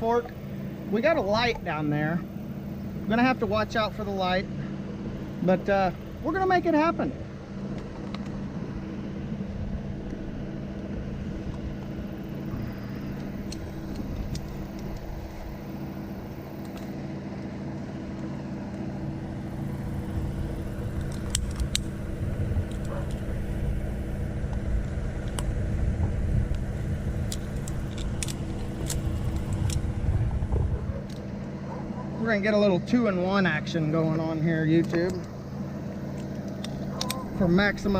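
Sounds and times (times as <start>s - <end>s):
brush chipper engine running: 0.0s - 37.9s
sharp clicks: 12.6s - 15.7s, 16.5s - 17.5s, 20.6s - 23.3s, 26.4s - 31.3s, 36.1s - 37.6s.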